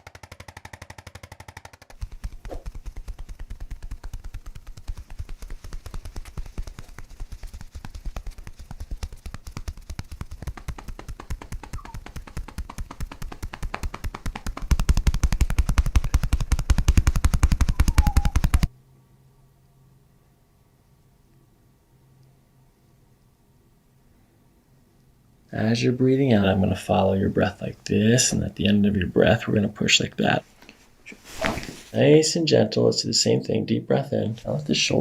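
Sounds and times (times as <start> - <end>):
percussive massager tapping: 0.0 - 18.7.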